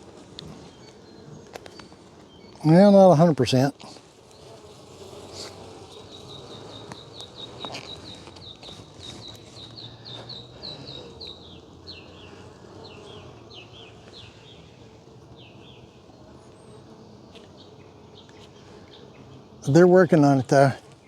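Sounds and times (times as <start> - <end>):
bees humming: 0.0 - 21.0
small bird chirping: 5.9 - 14.3.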